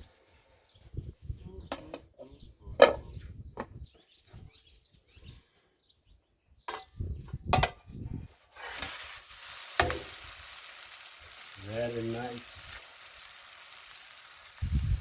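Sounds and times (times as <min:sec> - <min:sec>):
food sizzling in a frying pan: 0:08.5 - 0:15.0.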